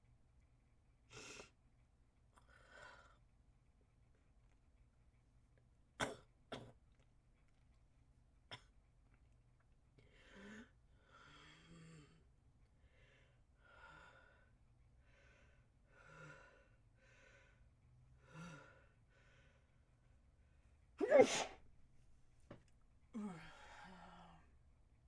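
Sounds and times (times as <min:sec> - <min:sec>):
breathy gasps: 0:21.0 - 0:21.6
person sneezing: 0:21.0 - 0:21.6.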